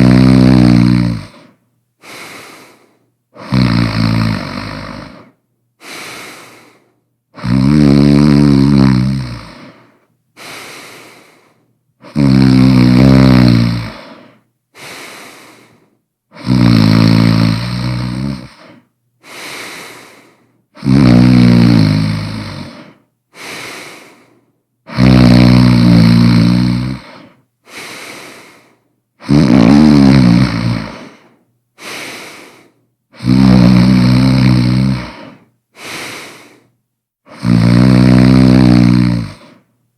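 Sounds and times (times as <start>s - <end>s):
person snoring loudly: 0.0s - 2.8s, 3.4s - 6.8s, 7.4s - 11.3s, 12.0s - 24.3s, 24.9s - 36.7s, 37.3s - 39.6s
quiet breath: 0.6s - 3.5s, 4.7s - 7.5s, 9.4s - 12.2s, 13.8s - 16.5s, 18.0s - 20.9s, 22.4s - 25.0s, 26.4s - 29.3s, 30.5s - 33.3s, 34.6s - 37.6s, 38.7s - 39.8s.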